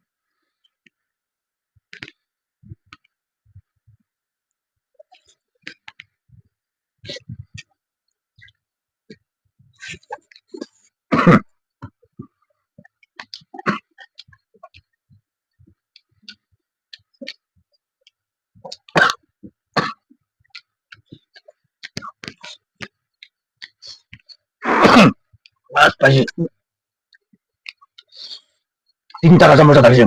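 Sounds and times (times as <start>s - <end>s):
person chewing with mouth clicks: 1.8s - 3.6s, 5.0s - 11.0s, 11.8s - 24.6s, 27.1s - 29.2s.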